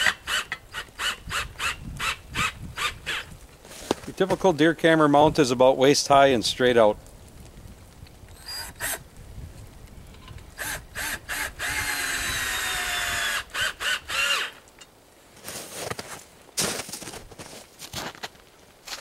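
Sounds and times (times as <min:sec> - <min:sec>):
power drill driving bolt into wood: 0:08.4 - 0:09.0, 0:10.6 - 0:14.6.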